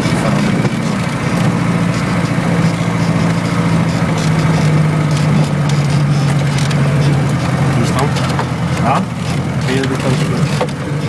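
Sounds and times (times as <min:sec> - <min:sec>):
vehicle engine running: 0:00.0 - 0:11.0
light clicks and knocks: 0:03.2 - 0:11.0.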